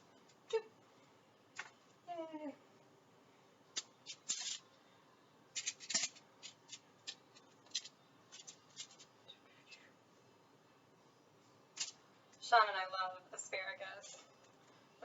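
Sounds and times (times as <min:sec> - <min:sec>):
aluminium foil crinkling: 0:03.8 - 0:04.7, 0:05.5 - 0:09.8.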